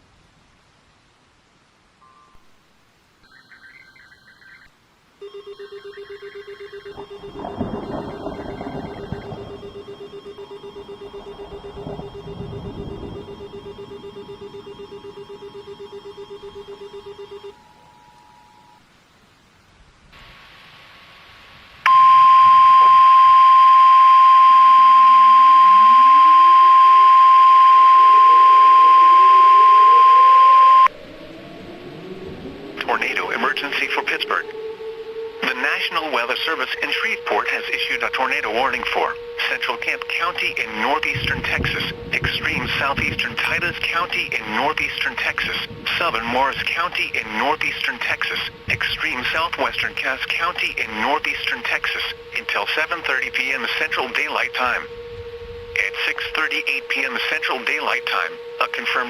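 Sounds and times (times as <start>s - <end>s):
background hiss: 0.0s - 31.0s, 32.2s - 59.0s
steady warning alarm tone: 3.2s - 18.9s, 21.9s - 59.0s
trilling telephone-like ring: 5.2s - 18.8s, 21.9s - 30.9s
rumbling noise: 7.0s - 15.2s, 37.5s - 54.2s.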